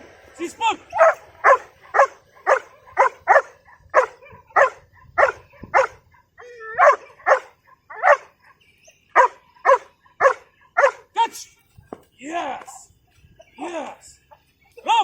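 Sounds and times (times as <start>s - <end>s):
dog barking: 0.9s - 8.3s, 9.2s - 11.1s.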